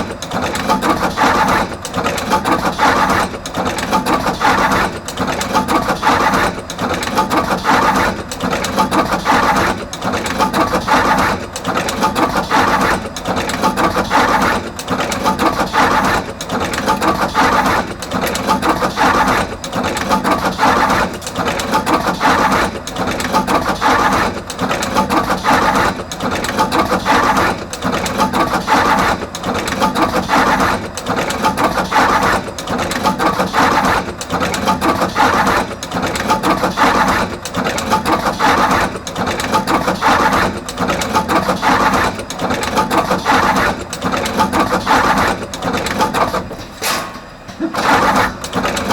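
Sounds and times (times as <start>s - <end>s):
wire machine mechanical clatter: 0.0s - 48.9s.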